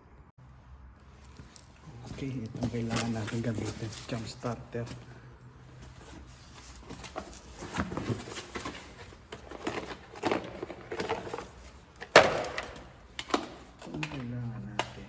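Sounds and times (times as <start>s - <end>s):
handling clicks and rustling: 1.1s - 15.0s.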